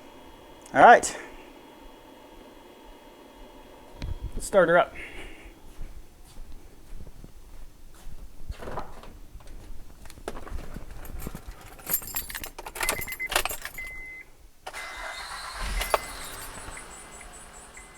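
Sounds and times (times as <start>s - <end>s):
car engine running: 0.0s - 5.0s, 14.7s - 17.9s
car keys jangling: 10.8s - 14.2s, 14.9s - 17.9s.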